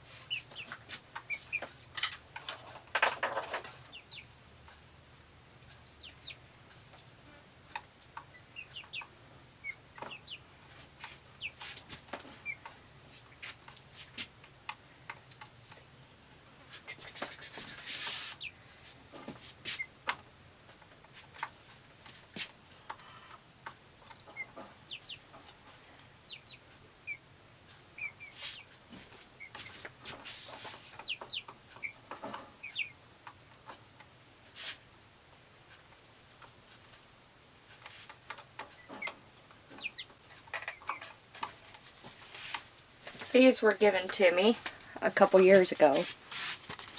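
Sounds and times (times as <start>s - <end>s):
chickens clucking and peeping: 0.0s - 46.0s
clicks and rustles of handling: 37.7s - 46.9s.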